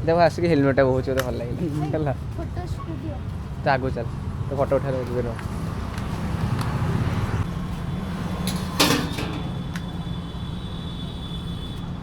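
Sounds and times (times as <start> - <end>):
road noise: 0.0 - 12.0
motorcycle engine rumble: 7.5 - 10.7.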